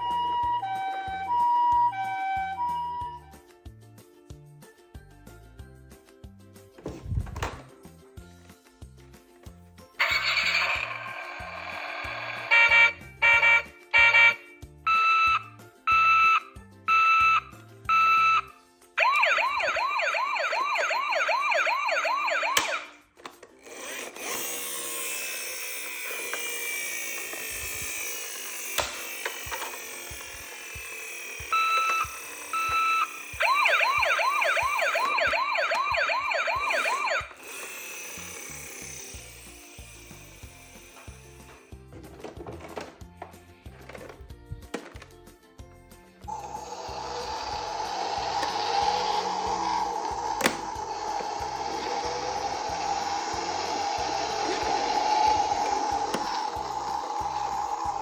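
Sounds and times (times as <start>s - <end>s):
toy electronic siren: 0.0s - 3.4s, 10.0s - 23.1s, 23.8s - 41.7s, 46.2s - 58.0s
short beeps: 14.9s - 18.5s.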